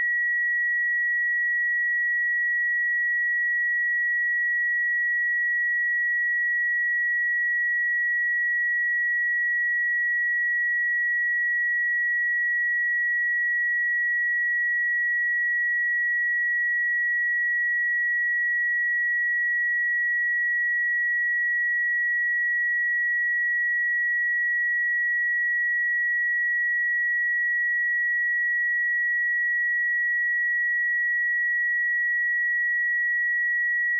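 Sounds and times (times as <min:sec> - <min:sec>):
sine-wave test tone: 0:00.0 - 0:33.9.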